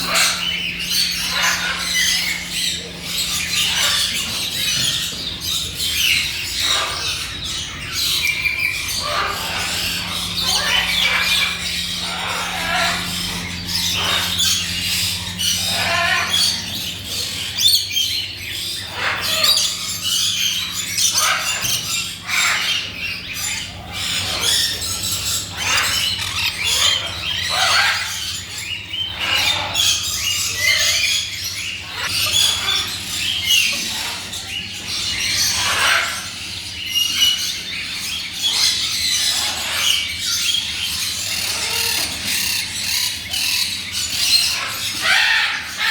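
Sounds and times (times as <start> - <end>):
steady low hum: 0.0 - 35.6
birds chirping and squawking: 0.0 - 45.9.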